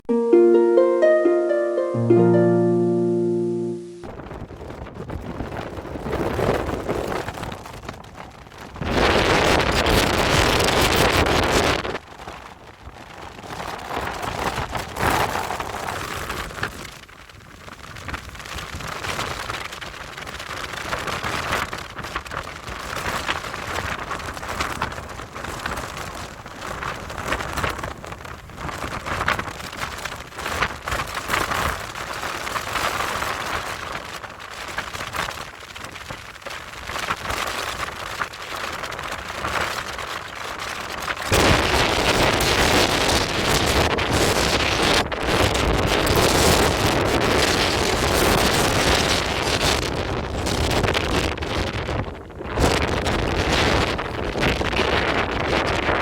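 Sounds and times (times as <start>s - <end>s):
wind buffeting microphone: 41.3s - 56.0s.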